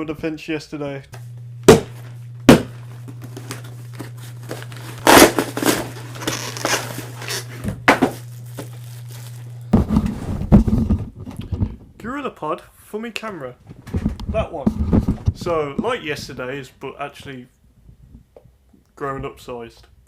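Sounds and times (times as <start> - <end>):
steady low hum: 0.0 - 12.7
packaging crinkling and tearing: 3.2 - 9.7.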